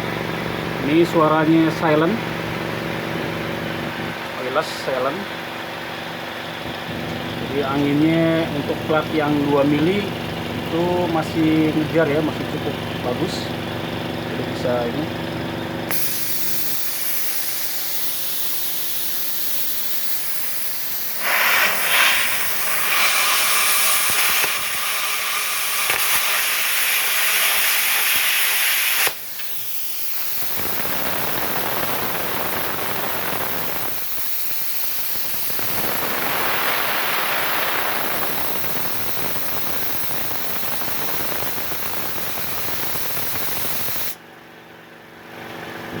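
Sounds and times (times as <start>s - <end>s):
plasma cutter hissing: 15.9s - 44.2s.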